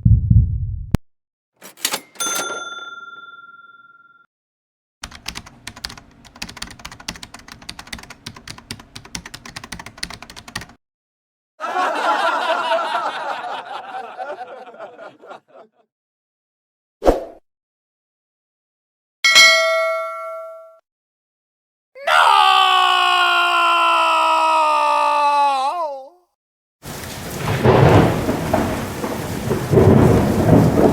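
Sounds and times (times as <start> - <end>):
bell ding: 1.6 - 4.3, 19.3 - 20.8
rapid keyboard typing: 5.0 - 10.8.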